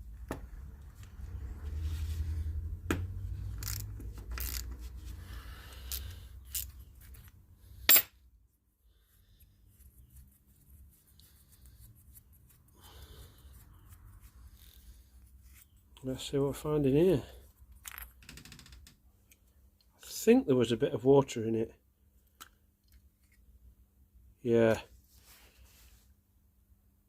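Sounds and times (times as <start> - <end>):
metal parts clicking and clinking: 3.5 - 4.8, 5.8 - 7.3.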